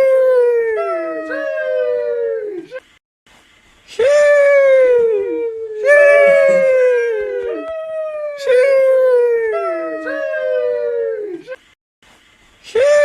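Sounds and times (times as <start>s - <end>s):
voice drawing out a high howl: 5.1s - 11.6s.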